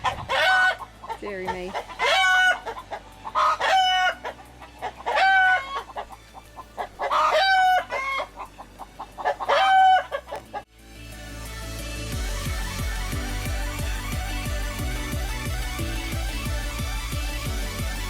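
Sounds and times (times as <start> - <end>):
rooster crowing loudly: 7.0 - 8.3, 9.4 - 10.2.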